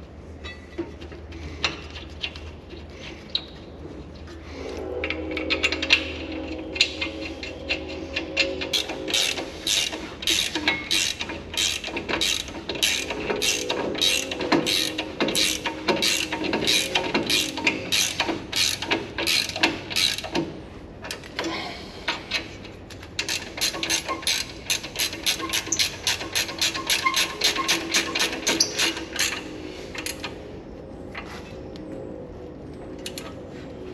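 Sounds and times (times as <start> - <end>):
ratchet wrench clicking: 8.7 - 20.4, 23.2 - 29.4.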